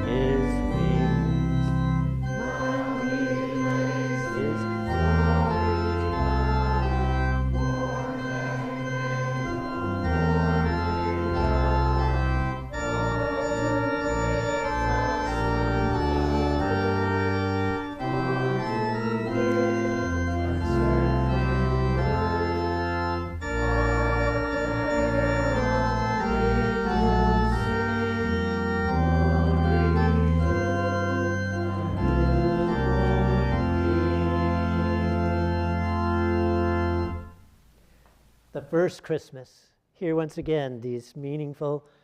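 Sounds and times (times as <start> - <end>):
church organ playing chords: 0.0 - 37.5.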